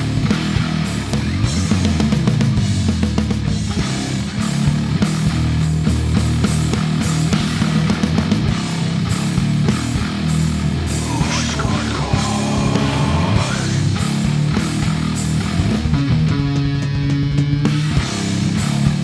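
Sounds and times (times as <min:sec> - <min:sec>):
effects-processed bass guitar: 0:00.0 - 0:19.0
steady drumming: 0:09.4 - 0:18.2.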